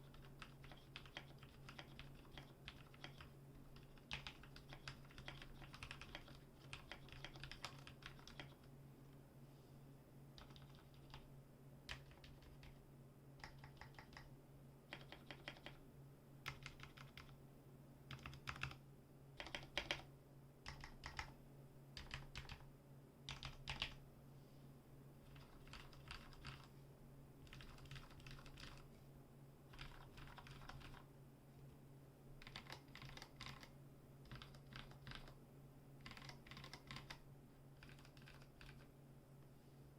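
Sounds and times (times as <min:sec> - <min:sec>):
faint keyboard clacking: 0:00.0 - 0:09.2, 0:10.4 - 0:12.8, 0:13.4 - 0:15.8, 0:16.4 - 0:17.4, 0:18.1 - 0:18.8, 0:19.4 - 0:21.4, 0:22.0 - 0:22.7, 0:23.3 - 0:24.0, 0:25.2 - 0:26.8, 0:27.4 - 0:29.0, 0:29.7 - 0:31.1, 0:32.4 - 0:35.4, 0:36.0 - 0:37.2, 0:37.8 - 0:39.0
faint low hum: 0:00.0 - 0:39.9.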